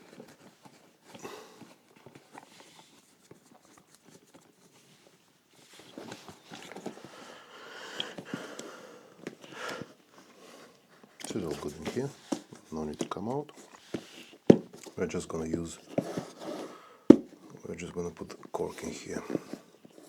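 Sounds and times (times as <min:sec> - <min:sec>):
scraping on leather: 0:11.2 - 0:17.3.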